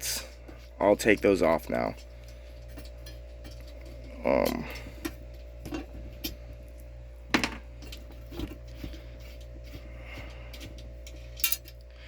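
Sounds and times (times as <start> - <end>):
steady low hum: 0.0 - 12.0
small metal parts clicking: 10.5 - 11.8.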